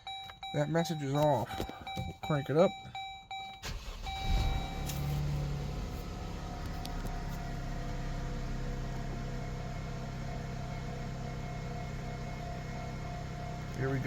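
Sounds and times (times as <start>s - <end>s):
car engine idling: 3.6s - 14.0s.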